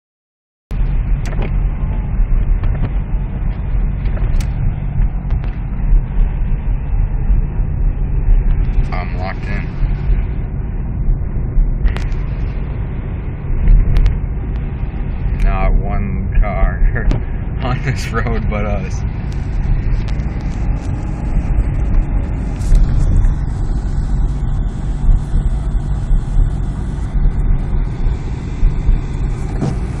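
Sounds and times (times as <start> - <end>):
car driving rumble inside cabin: 0.7 - 30.0.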